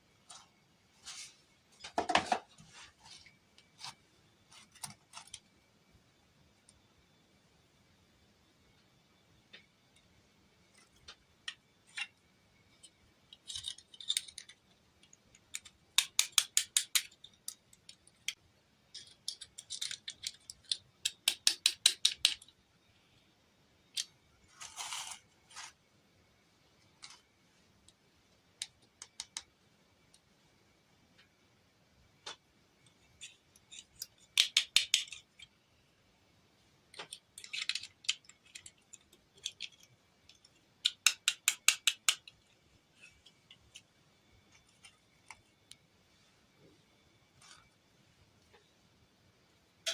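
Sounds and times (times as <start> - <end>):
plastic toy pieces rattling: 13.3 - 22.5, 23.9 - 25.7, 33.1 - 35.6, 36.9 - 43.9.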